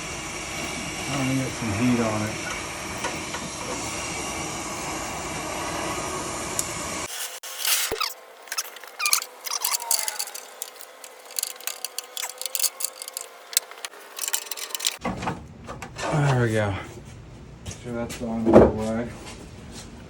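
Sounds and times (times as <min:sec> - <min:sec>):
metal tool clicks and scrapes: 0:07.4 - 0:15.0
tool squeaks: 0:07.4 - 0:15.0.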